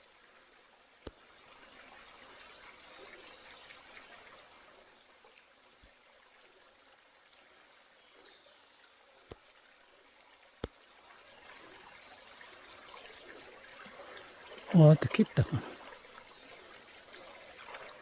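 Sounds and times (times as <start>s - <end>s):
stream trickling: 0.0s - 18.0s.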